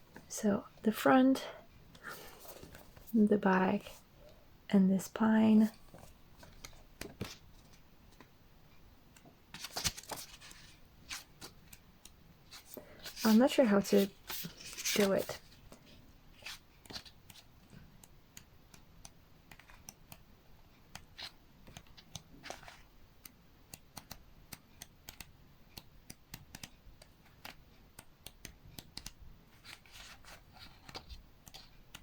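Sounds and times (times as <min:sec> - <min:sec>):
flipbook pages turning: 0:05.9 - 0:08.3, 0:09.5 - 0:11.8, 0:12.5 - 0:15.6, 0:16.4 - 0:17.5, 0:19.5 - 0:20.2, 0:21.0 - 0:22.9, 0:28.8 - 0:32.0.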